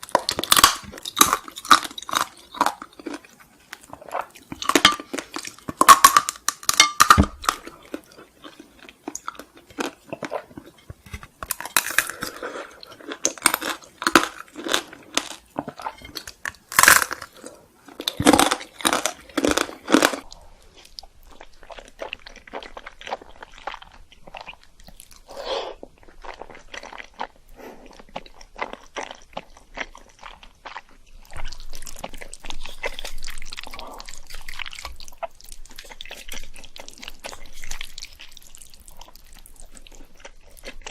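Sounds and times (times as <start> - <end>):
crunching and chewing sweets: 0.0 - 40.9.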